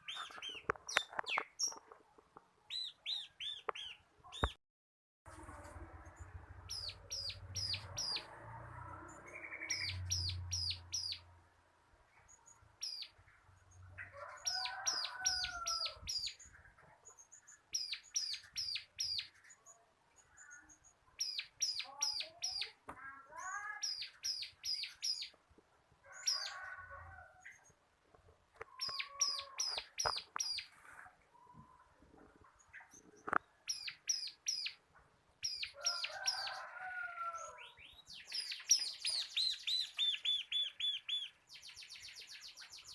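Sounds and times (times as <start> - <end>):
bird singing high sharp notes: 37.8 - 42.9.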